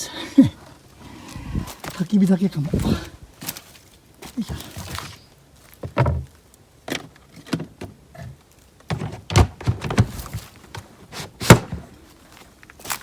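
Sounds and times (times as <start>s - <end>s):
wood and debris knocking and thudding: 4.5s - 12.0s.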